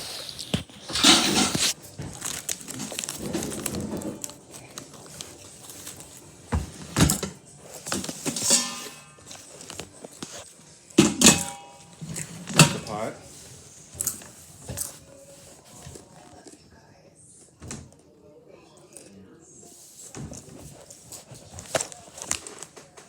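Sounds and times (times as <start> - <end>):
cookware clatter: 0.0 - 1.8, 6.6 - 10.4, 11.0 - 13.1
food packaging crinkling: 0.0 - 6.5, 7.5 - 10.6, 20.7 - 23.0
cookware knocks and clicks: 11.0 - 12.9.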